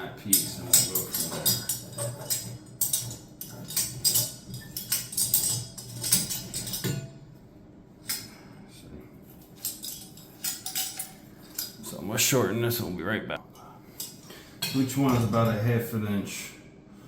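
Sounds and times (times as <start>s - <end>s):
copper pipe clinking and rattling: 0.0s - 7.3s, 9.4s - 11.9s, 14.0s - 15.7s.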